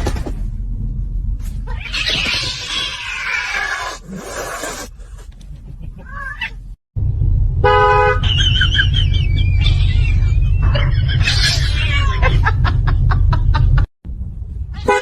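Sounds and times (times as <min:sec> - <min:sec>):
engine and road rumble: 0:00.0 - 0:15.0
car horn honk: 0:07.6 - 0:08.3, 0:14.8 - 0:15.0.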